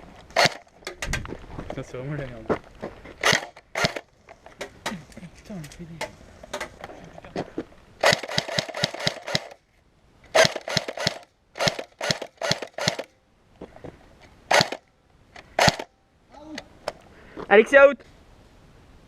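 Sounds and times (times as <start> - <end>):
airsoft guns firing: 0.4 - 0.7, 3.2 - 4.0, 8.0 - 9.6, 10.3 - 13.1, 14.5 - 14.8, 15.6 - 15.9.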